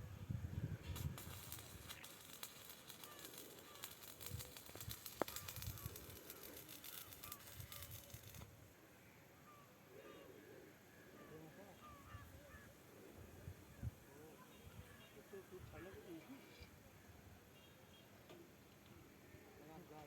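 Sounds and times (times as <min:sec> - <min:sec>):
crackling clicks: 0:00.9 - 0:08.5
small bird calls: 0:01.0 - 0:08.4.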